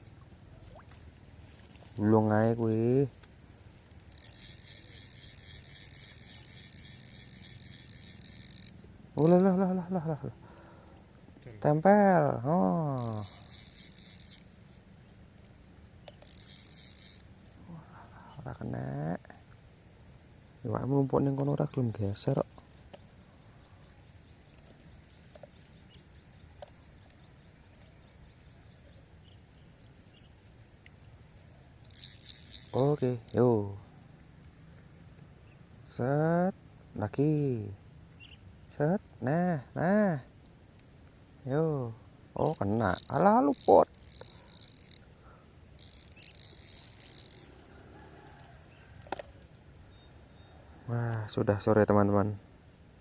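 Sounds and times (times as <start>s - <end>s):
fishing reel whirring: 2.2s - 10.2s, 11.7s - 17.5s, 29.9s - 33.8s, 42.2s - 50.1s
soft ticks: 22.5s - 23.3s, 24.4s - 28.5s, 29.3s - 31.0s, 40.7s - 41.2s
chirps: 38.2s - 38.4s, 48.7s - 51.7s.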